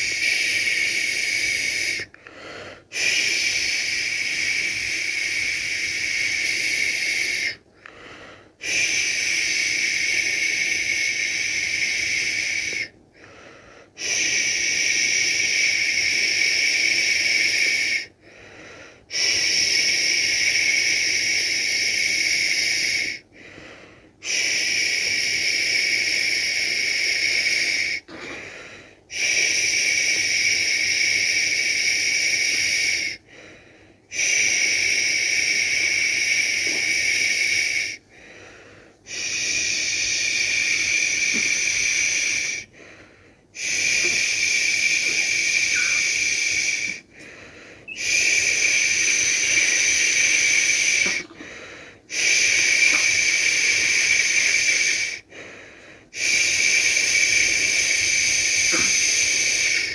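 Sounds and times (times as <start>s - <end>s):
person shushing: 43.6s - 47.3s, 47.9s - 55.1s, 56.8s - 59.9s.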